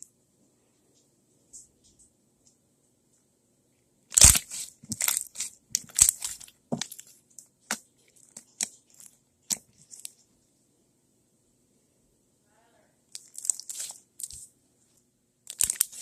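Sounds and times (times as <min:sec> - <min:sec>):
slime popping and crunching: 0:04.1 - 0:10.2, 0:13.2 - 0:14.4, 0:15.5 - 0:16.0.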